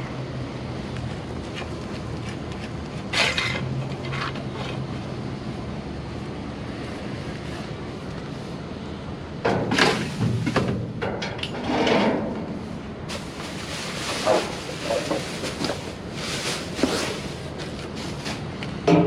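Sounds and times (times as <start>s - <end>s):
objects rustling and knocking: 13.1s - 19.0s.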